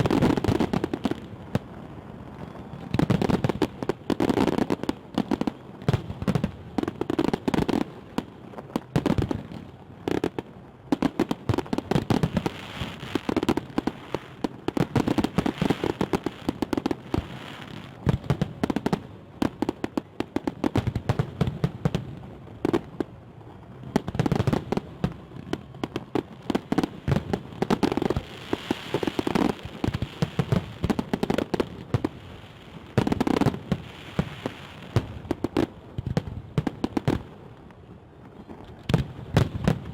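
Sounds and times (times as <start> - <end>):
fireworks crackling pops: 0.0 - 39.9.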